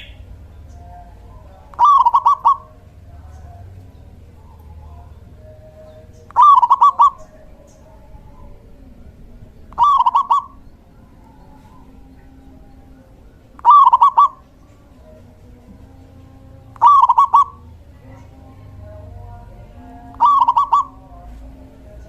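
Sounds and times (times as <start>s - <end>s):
dove cooing: 1.7s - 3.0s, 5.8s - 7.5s, 9.7s - 15.4s, 16.6s - 18.4s, 19.8s - 21.3s.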